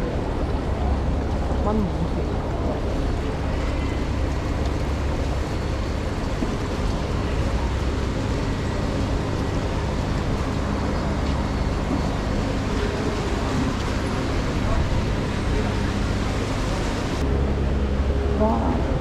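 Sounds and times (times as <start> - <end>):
heavy rain falling: 2.8 - 10.7, 12.1 - 17.2.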